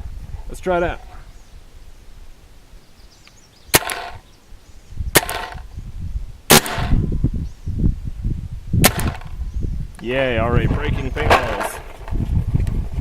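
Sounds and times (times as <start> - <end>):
paintball gun shots: 3.7 - 4.2, 5.2 - 5.7, 6.5 - 7.1, 8.8 - 9.4.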